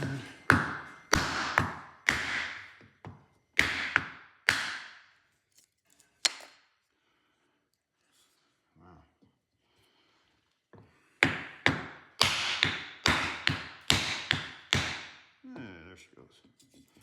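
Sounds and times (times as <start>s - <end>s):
hammer knocking on wood: 0.0s - 4.8s, 11.2s - 15.2s.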